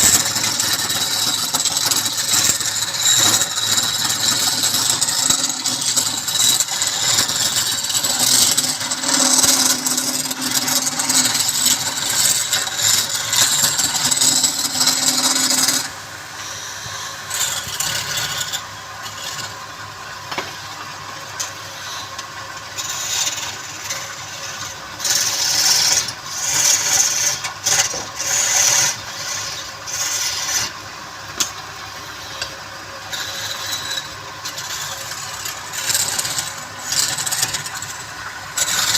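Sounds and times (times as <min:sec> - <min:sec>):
lathe scraping wood: 0:00.0 - 0:19.6, 0:22.8 - 0:30.8, 0:33.1 - 0:38.9
motor hum: 0:00.0 - 0:19.7.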